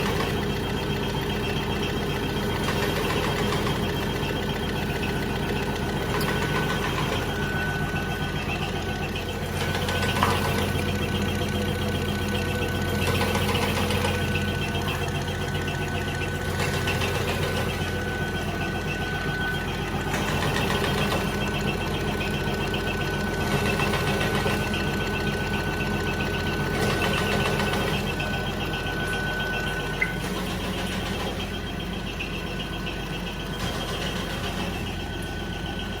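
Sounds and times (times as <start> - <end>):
label cutting machine running: 0.0 - 36.0
thin steady whine: 0.0 - 36.0
cutter chopping: 9.4 - 11.4, 30.0 - 31.6.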